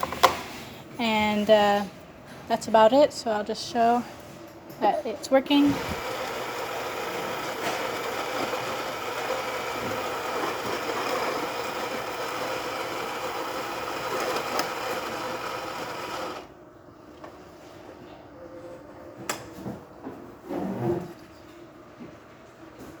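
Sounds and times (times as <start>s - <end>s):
espresso machine humming: 5.8s - 16.5s.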